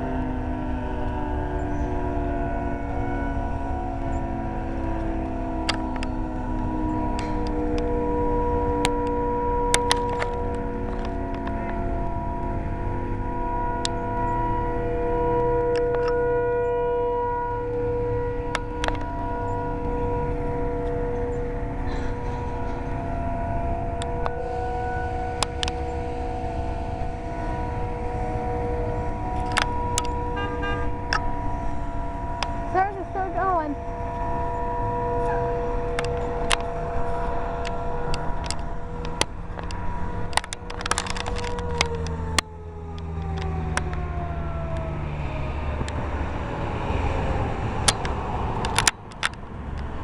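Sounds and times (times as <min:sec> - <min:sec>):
warning siren steady chord: 0:00.0 - 0:50.0
low rumble: 0:17.1 - 0:50.0.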